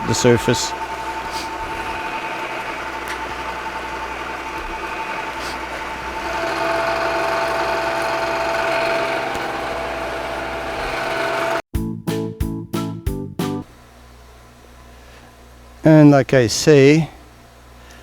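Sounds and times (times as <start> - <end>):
milling machine cutting steel: 0.0 - 11.6
steady cutter whine: 0.0 - 11.7.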